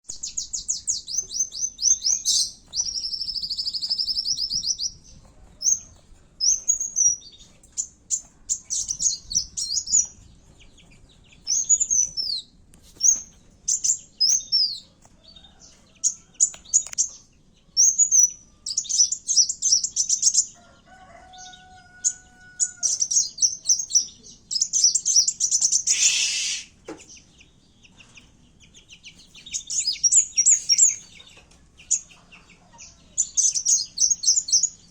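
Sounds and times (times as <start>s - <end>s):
harsh loud bird chirp: 0.1s - 10.2s, 21.3s - 32.1s
sunbird chirps and trills: 0.1s - 10.2s, 11.2s - 20.6s, 21.3s - 34.9s.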